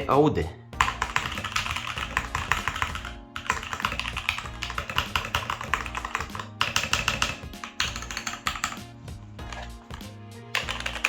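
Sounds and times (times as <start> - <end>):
mechanical keyboard key clacks: 0.8 - 8.8, 10.6 - 11.0.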